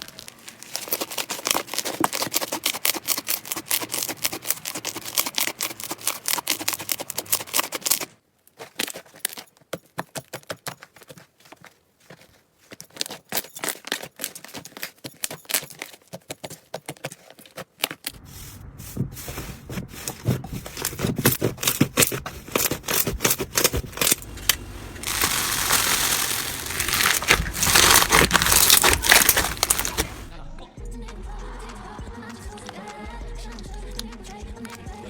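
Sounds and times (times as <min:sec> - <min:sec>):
slime crackling and popping: 0:00.0 - 0:05.7, 0:24.0 - 0:30.3.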